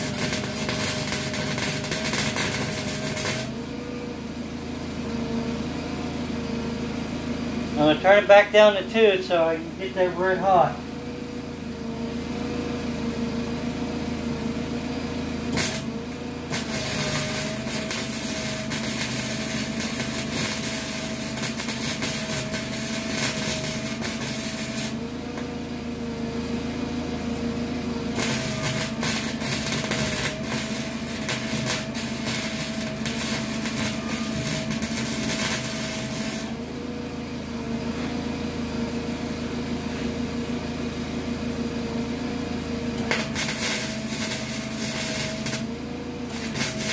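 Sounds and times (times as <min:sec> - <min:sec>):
welder arc crackling: 0:00.0 - 0:03.6, 0:15.5 - 0:25.5, 0:28.2 - 0:36.6, 0:43.0 - 0:45.7, 0:46.3 - 0:46.9
welder hum: 0:00.0 - 0:04.3, 0:04.9 - 0:12.2, 0:12.8 - 0:26.3, 0:27.4 - 0:36.9, 0:42.9 - 0:46.9.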